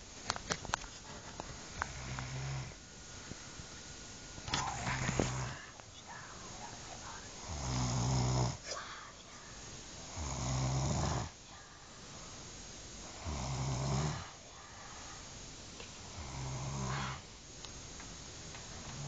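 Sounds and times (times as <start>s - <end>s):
quiet breathing: 0.8s - 19.0s
person snoring: 1.8s - 2.8s, 4.5s - 12.4s, 13.0s - 15.3s, 16.0s - 17.3s.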